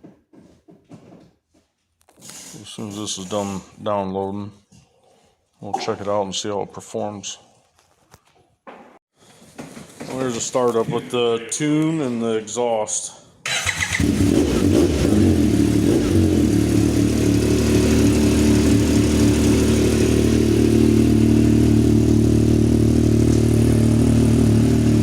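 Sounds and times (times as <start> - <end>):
engine starting and idling: 13.4 - 20.5.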